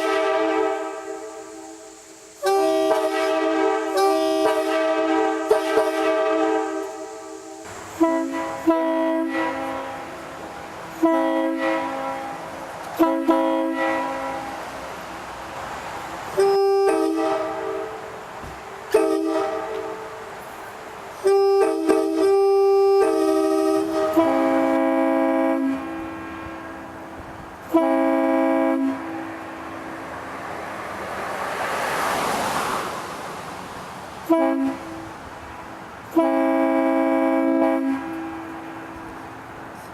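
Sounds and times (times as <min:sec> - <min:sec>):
locomotive air horn blasts: 0:00.0 - 0:10.3, 0:10.9 - 0:14.7, 0:16.3 - 0:29.8, 0:34.2 - 0:35.1, 0:36.0 - 0:39.3
rushing noise: 0:00.0 - 0:39.9.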